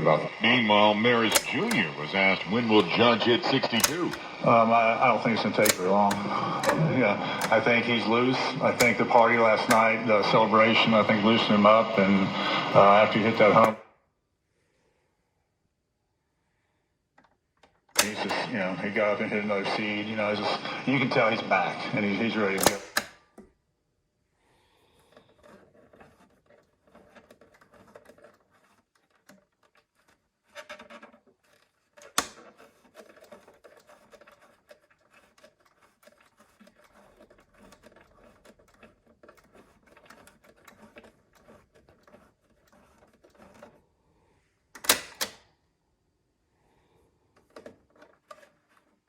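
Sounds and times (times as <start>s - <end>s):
radio push buttons clacking: 0.0s - 13.8s, 17.2s - 23.2s, 44.8s - 45.4s
faint radio crackling: 0.0s - 13.9s, 17.9s - 23.1s.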